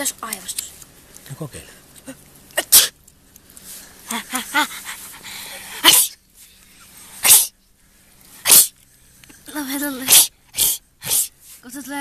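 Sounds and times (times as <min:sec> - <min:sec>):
person sneezing: 0:02.6 - 0:03.0, 0:05.7 - 0:06.2, 0:07.2 - 0:07.5, 0:08.4 - 0:08.7, 0:10.1 - 0:11.3
rising breaths before sneeze: 0:04.7 - 0:07.5, 0:08.3 - 0:08.8, 0:10.1 - 0:11.5.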